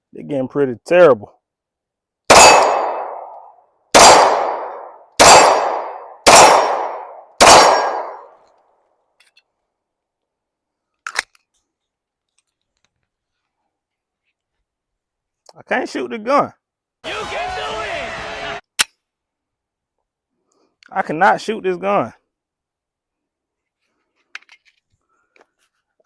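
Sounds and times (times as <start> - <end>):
pistol shots: 2.3 - 8.3.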